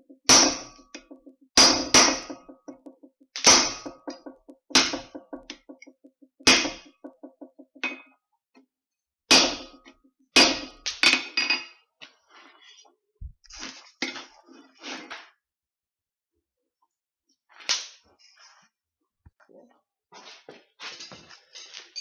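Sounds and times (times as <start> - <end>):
hammer striking steel on anvil: 0.2 - 8.0, 9.3 - 9.8, 10.4 - 10.8.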